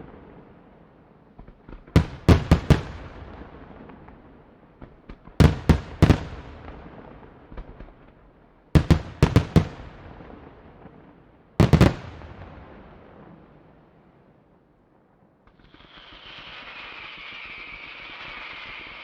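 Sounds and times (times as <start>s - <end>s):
fireworks bursting with loud bangs: 0.0s - 13.8s, 15.4s - 19.0s
light fireworks pops: 1.4s - 12.8s, 15.4s - 19.0s.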